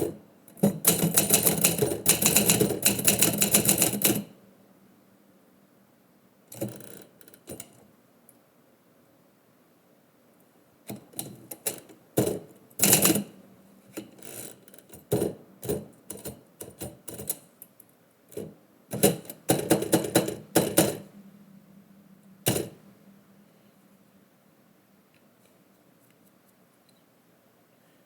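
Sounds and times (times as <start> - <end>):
typewriter key strikes: 0.6 - 4.3, 18.9 - 21.0.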